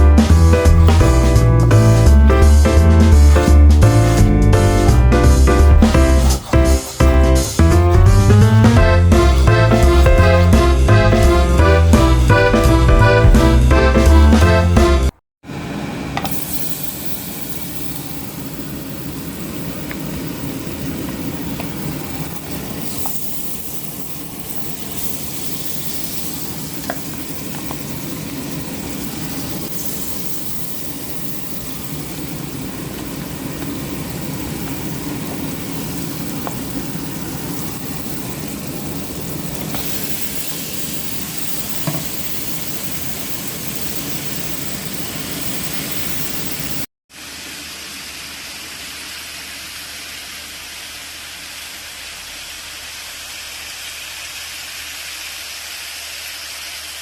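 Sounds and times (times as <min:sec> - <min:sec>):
meat sizzling in a pot: 0:00.0 - 0:14.4, 0:16.2 - 0:57.0.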